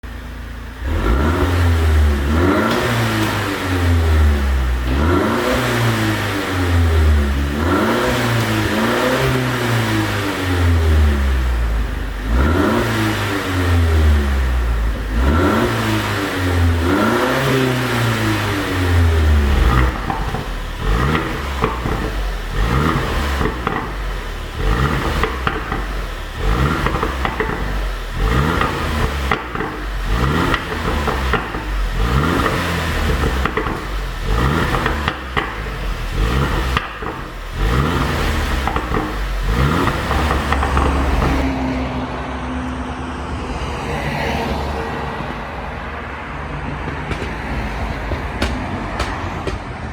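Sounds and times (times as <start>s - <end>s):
car engine revving: 0.0s - 41.6s, 44.0s - 49.9s
exhaust pops and crackles: 2.0s - 6.0s, 18.1s - 41.4s, 46.7s - 49.9s.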